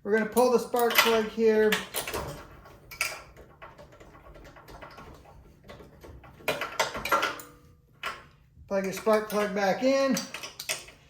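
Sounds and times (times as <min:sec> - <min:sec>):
hand tools clicking on metal: 0:00.2 - 0:11.0.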